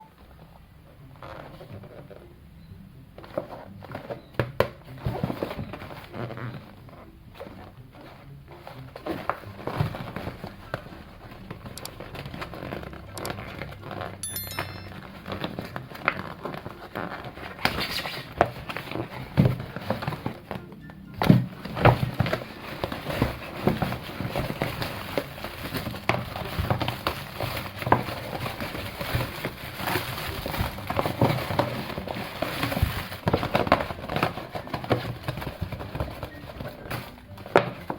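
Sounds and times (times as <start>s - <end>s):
plastic packaging crinkling: 21.4s - 37.9s.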